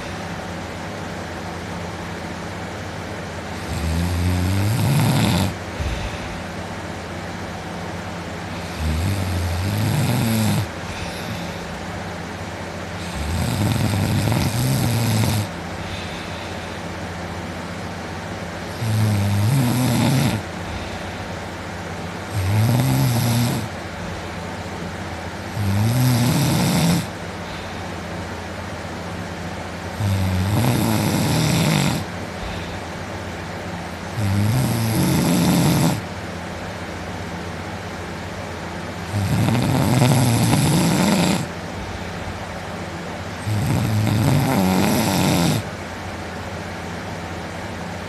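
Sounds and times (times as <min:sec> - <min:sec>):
steady background hum: 0:00.0 - 0:48.0
man snoring loudly: 0:03.5 - 0:06.6, 0:08.5 - 0:11.9, 0:13.0 - 0:16.9, 0:18.7 - 0:21.2, 0:22.3 - 0:23.8, 0:25.5 - 0:27.8, 0:29.9 - 0:32.8, 0:34.1 - 0:36.1, 0:39.0 - 0:41.6, 0:43.4 - 0:45.7.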